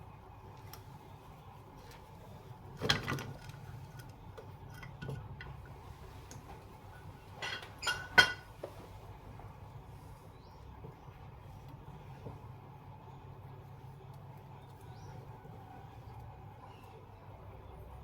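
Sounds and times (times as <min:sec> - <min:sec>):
metal tools clanking: 0:06.9 - 0:08.5.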